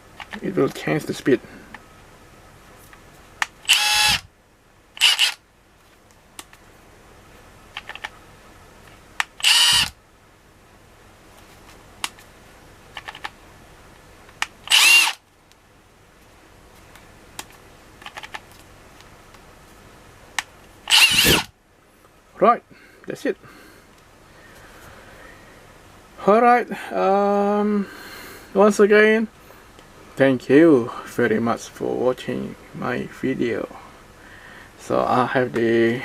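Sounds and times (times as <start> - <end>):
impact wrench motor whirring: 3.6 - 4.3, 5.0 - 5.4, 9.4 - 10.0, 14.6 - 15.2, 20.9 - 21.5.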